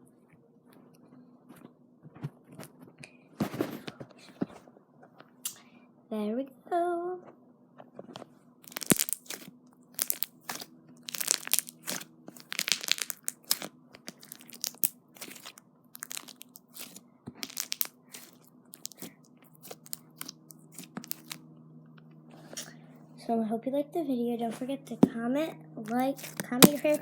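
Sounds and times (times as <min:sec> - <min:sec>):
slime crackling and popping: 0:08.6 - 0:21.4, 0:25.8 - 0:27.0.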